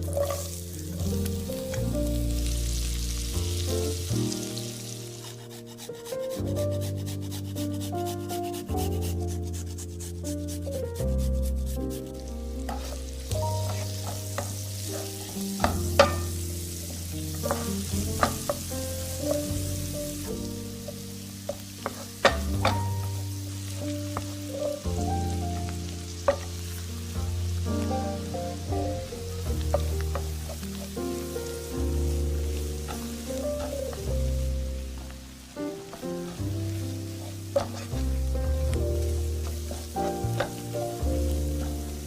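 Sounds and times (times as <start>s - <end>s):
background music: 0.0s - 42.0s
food sizzling in a pan: 0.0s - 42.0s
utensil clicking against pan: 17.4s - 18.7s, 20.9s - 22.9s.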